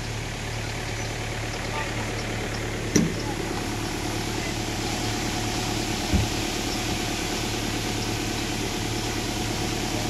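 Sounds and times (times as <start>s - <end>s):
heavy diesel engine running: 0.0s - 10.0s
low thump: 6.1s - 6.4s.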